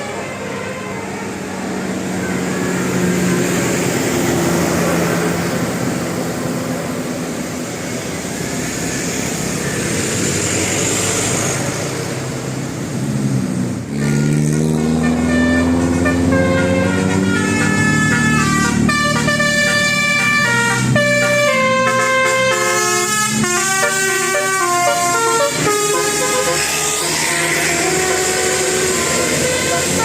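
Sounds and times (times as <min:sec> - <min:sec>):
multi-tone bus horn tune: 0:00.0 - 0:05.3, 0:13.9 - 0:30.0
buses passing on road: 0:00.0 - 0:30.0.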